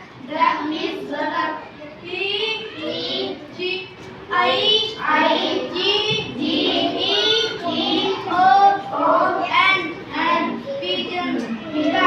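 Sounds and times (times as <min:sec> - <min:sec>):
young children singing: 0:00.0 - 0:12.0.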